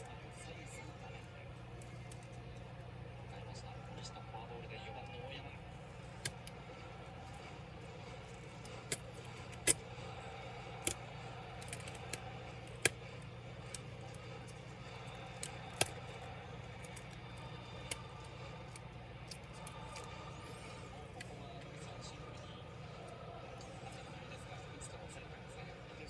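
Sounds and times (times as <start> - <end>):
steady low hum: 0.0 - 26.0
small tools clicking and tapping: 1.7 - 2.6, 5.8 - 21.7.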